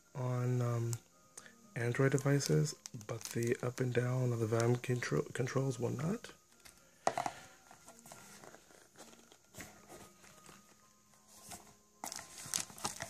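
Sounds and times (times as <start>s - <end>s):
packaging rustling and clicks: 1.9s - 5.0s, 6.5s - 13.0s
packaging crinkling: 2.2s - 5.0s, 6.5s - 13.0s.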